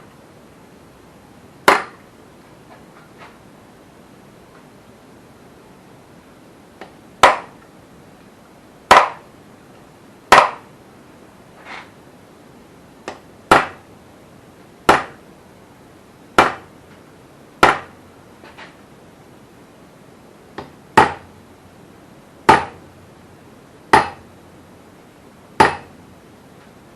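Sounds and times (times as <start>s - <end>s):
hammer striking metal punch: 1.7s - 2.0s, 7.2s - 7.5s, 8.9s - 9.2s, 10.3s - 10.6s, 17.6s - 17.9s, 20.6s - 21.2s, 22.5s - 22.8s, 23.9s - 24.2s, 25.6s - 25.9s.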